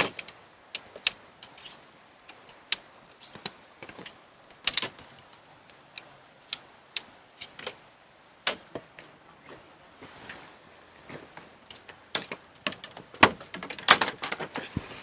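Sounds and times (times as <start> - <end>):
clicks and knocks of handled objects: 0.0 - 7.8, 11.1 - 15.0.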